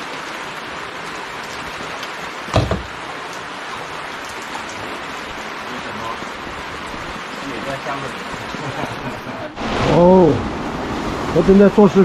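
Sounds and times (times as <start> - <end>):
heavy rain pouring: 0.0 - 12.0
loud knocking: 2.5 - 3.0.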